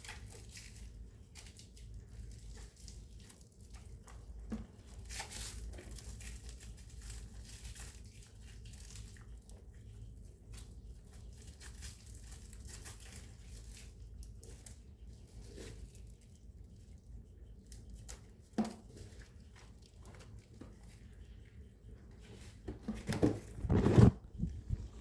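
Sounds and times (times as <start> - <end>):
rustling and crinkling handling: 0.0 - 25.0
short scrapes and clicks: 23.1 - 25.0.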